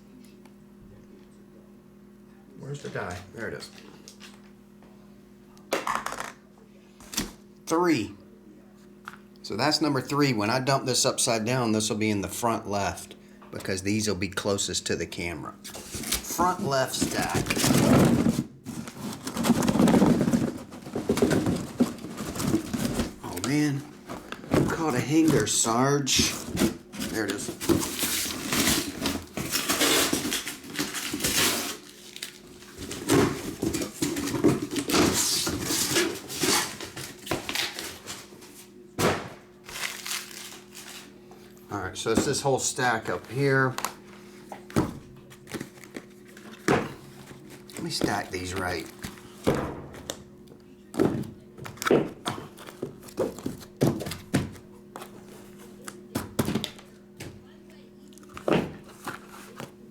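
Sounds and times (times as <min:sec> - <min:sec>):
packs sliding: 0:15.7 - 0:31.9
wrappers crinkling: 0:27.2 - 0:33.0, 0:39.6 - 0:41.1.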